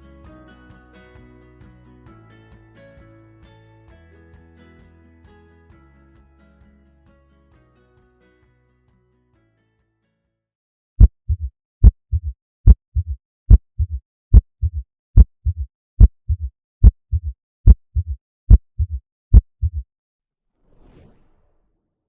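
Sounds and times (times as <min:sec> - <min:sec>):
heartbeat gallop rhythm: 0:11.0 - 0:19.9.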